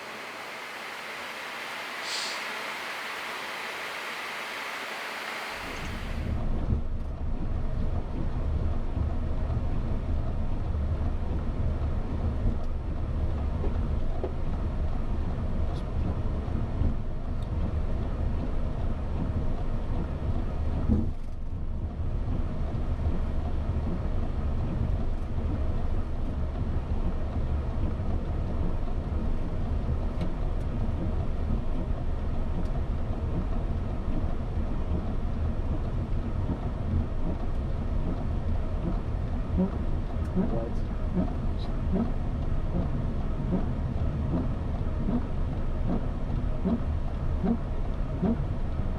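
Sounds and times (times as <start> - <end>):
airflow noise: 0.0 - 6.4
aircraft cockpit rumble: 0.0 - 6.8, 22.9 - 48.9.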